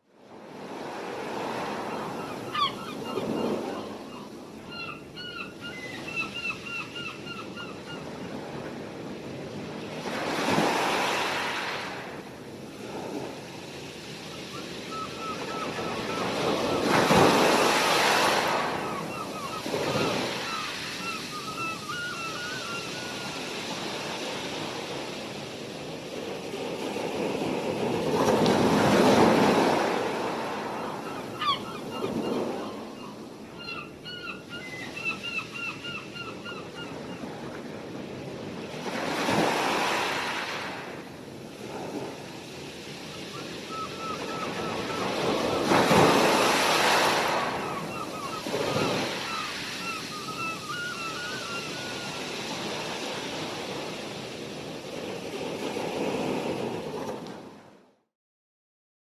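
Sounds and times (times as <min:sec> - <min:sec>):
gulls calling: 0:01.8 - 0:08.1, 0:14.5 - 0:23.4, 0:29.7 - 0:37.3, 0:43.2 - 0:52.2
sea waves breaking: 0:07.5 - 0:57.6.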